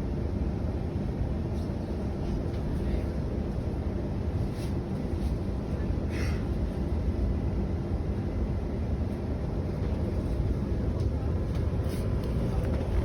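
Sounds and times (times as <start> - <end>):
train carriage rumbling on track: 0.0 - 13.0.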